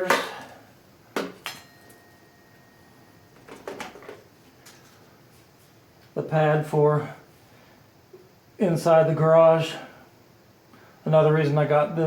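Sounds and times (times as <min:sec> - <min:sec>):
sharp clacks of parts set down: 0:01.2 - 0:02.0.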